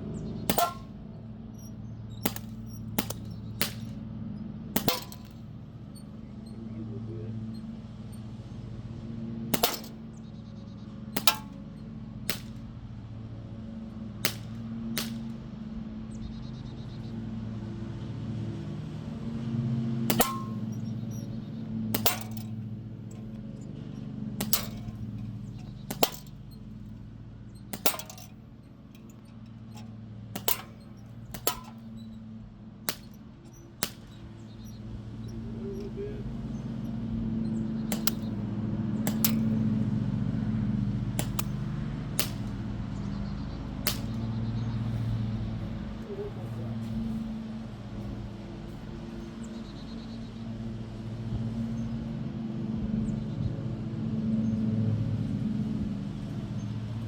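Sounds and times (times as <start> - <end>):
steady low hum: 0.0 - 57.0
bb gun firing sharp cracks: 0.4 - 1.1, 2.2 - 4.0, 4.8 - 5.6, 9.5 - 10.2, 11.2 - 12.8, 14.0 - 15.6, 20.0 - 23.6, 24.4 - 32.2, 32.8 - 35.2, 37.7 - 39.9, 41.1 - 46.0.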